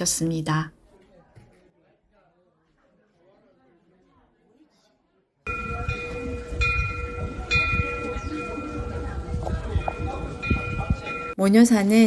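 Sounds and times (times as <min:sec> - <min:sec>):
bronze bell ringing: 0:05.5 - 0:11.4
low rumbling noise: 0:05.5 - 0:11.4.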